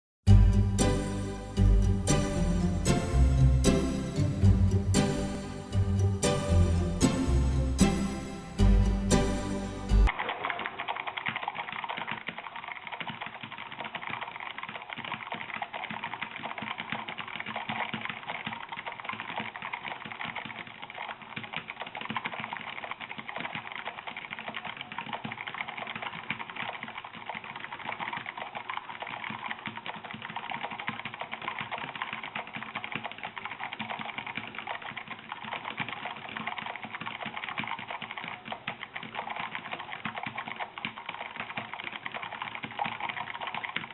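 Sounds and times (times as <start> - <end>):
fast mechanical keyboard typing: 10.0 - 43.9.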